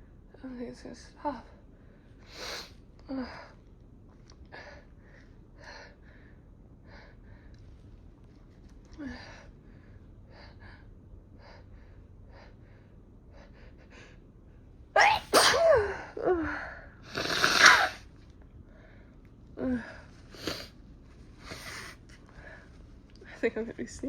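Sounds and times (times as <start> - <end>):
person sneezing: 15.0 - 15.9, 17.2 - 18.0
sniffing and breathing: 20.2 - 22.8.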